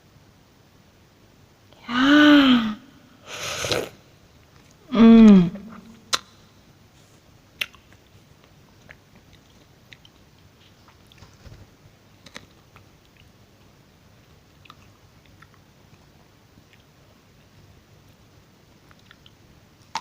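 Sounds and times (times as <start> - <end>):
chewing: 7.6 - 11.6, 12.2 - 13.4, 14.2 - 17.0, 18.8 - 20.0.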